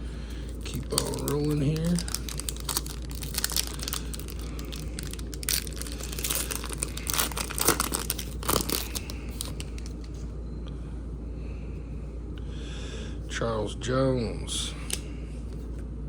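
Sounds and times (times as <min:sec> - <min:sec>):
wrapper tearing and crinkling: 0:00.5 - 0:10.2.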